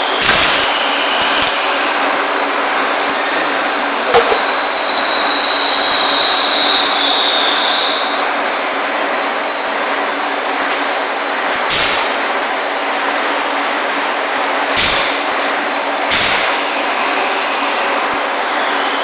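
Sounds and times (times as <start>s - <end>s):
high whine: 0.0s - 19.0s
lathe machine noise: 0.0s - 19.0s.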